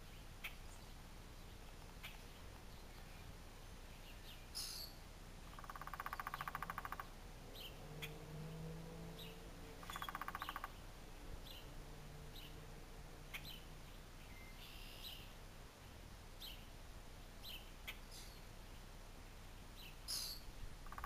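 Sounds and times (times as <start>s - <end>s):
woodpecker drumming: 5.4s - 7.1s, 9.8s - 10.8s.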